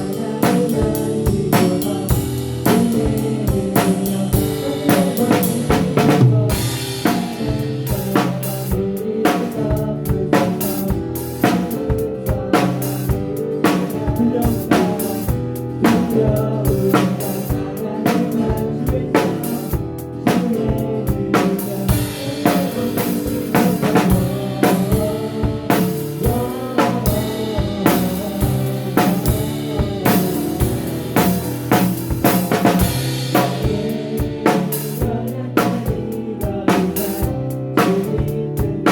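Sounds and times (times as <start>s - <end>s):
live band playing: 0.0s - 38.9s
snare and bass drum strokes: 3.8s - 9.6s, 21.4s - 36.1s.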